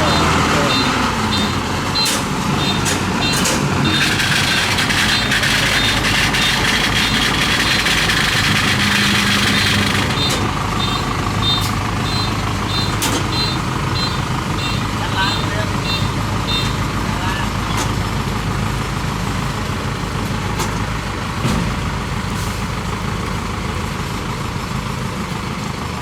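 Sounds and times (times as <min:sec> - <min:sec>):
short high beeps: 0:00.0 - 0:06.0
tractor engine running: 0:00.0 - 0:26.0.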